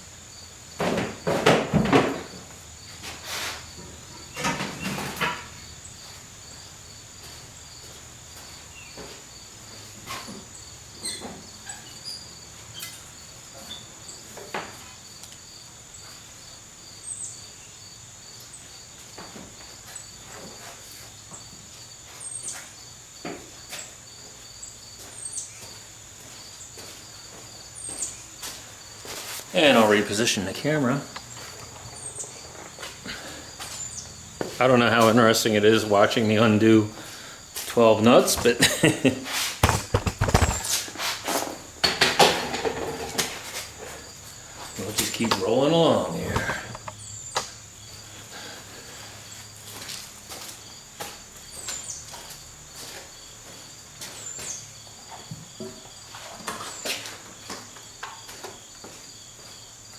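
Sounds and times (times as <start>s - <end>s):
hand tools knocking and clinking: 39.6s - 40.7s.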